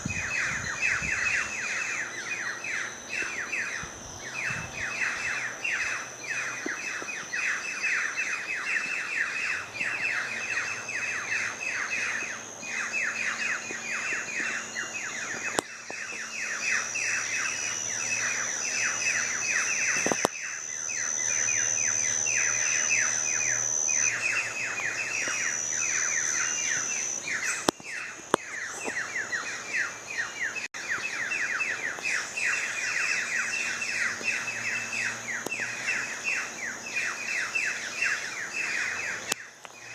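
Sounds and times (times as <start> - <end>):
birds chirping: 0.0 - 39.9
thin high steady tone: 0.0 - 39.9.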